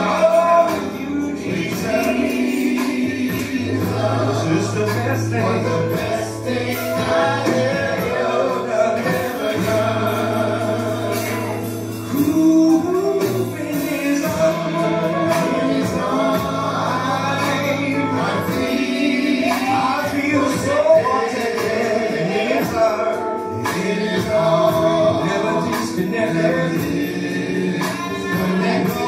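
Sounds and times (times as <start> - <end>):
held instrumental chords: 0.0 - 29.0
men's vocal group singing gospel: 0.0 - 29.0.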